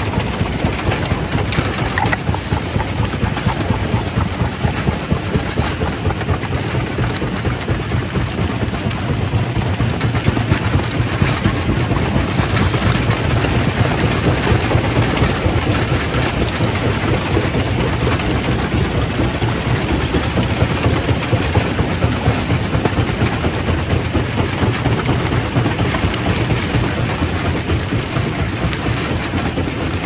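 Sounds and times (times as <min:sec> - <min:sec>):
rock rattling and crackling: 0:00.0 - 0:17.4
rock crusher rumbling: 0:00.0 - 0:30.0.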